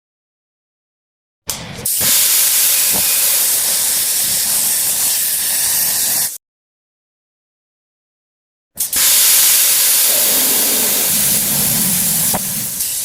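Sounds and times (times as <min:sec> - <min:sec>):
pressurized spray hissing: 0:09.0 - 0:13.0.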